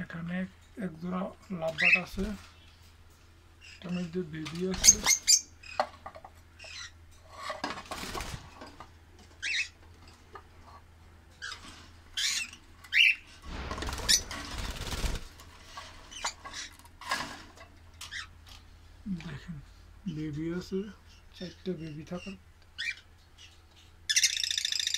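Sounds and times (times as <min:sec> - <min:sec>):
parrots chirping: 0:01.7 - 0:02.9, 0:03.6 - 0:07.1, 0:09.4 - 0:09.8, 0:11.4 - 0:13.3, 0:16.1 - 0:16.9, 0:18.0 - 0:18.4, 0:21.0 - 0:24.9
wings or cage rustling: 0:07.4 - 0:08.8, 0:13.4 - 0:17.8.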